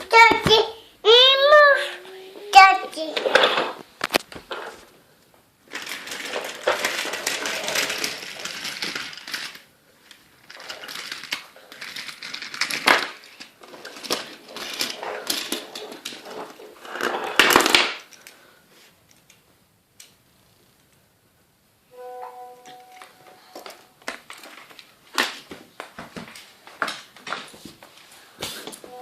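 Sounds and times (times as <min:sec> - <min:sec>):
toy trains clattering: 0:02.4 - 0:04.8, 0:05.7 - 0:18.4, 0:22.6 - 0:25.4.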